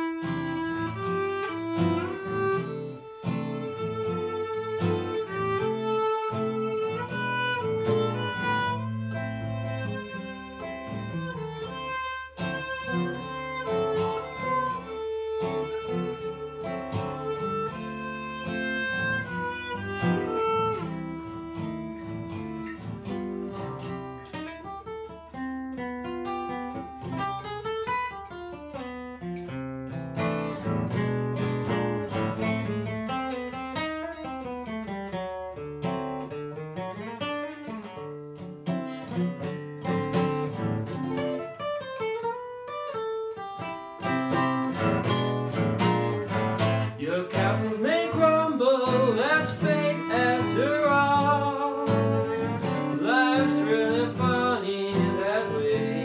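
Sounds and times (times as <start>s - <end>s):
bowed string melody: 0.0s - 24.3s, 44.4s - 56.0s
plucked acoustic guitar: 0.0s - 56.0s.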